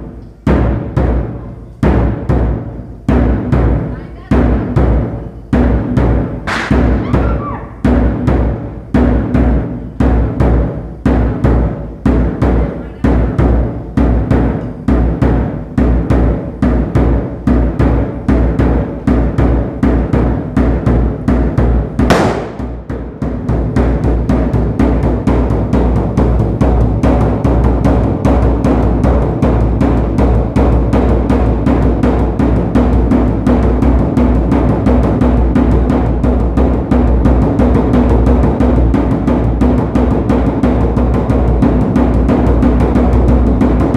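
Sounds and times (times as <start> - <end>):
drums beating: 0.0 - 43.9
cymbal crash: 22.1 - 23.0.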